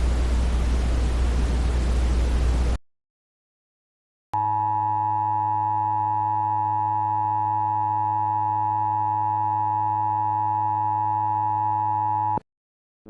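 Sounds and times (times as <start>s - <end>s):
two-note electronic alarm tone: 4.4s - 12.4s.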